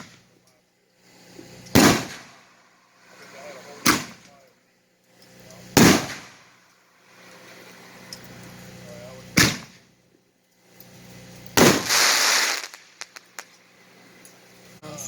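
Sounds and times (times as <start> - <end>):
hissing crackle: 1.0 - 15.0
firework shells banging: 1.6 - 2.6, 3.8 - 4.4, 5.7 - 6.8, 9.3 - 9.9, 11.4 - 13.7
sharp pops: 1.7 - 2.4, 3.8 - 4.3, 5.8 - 6.4, 9.4 - 9.9, 11.4 - 13.6.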